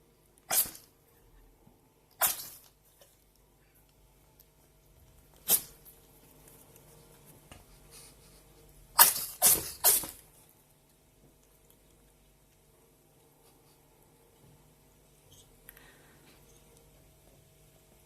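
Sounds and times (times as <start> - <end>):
ferret sneezing: 0.5 - 1.0, 2.1 - 2.8, 5.4 - 5.8, 8.9 - 10.2.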